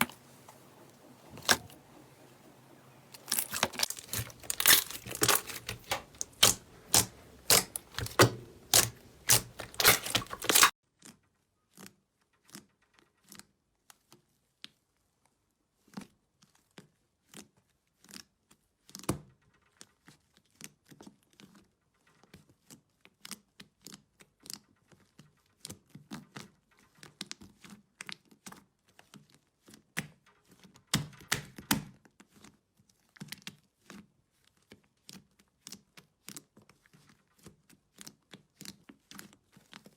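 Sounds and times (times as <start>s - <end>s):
slime crackling and popping: 3.1s - 10.7s.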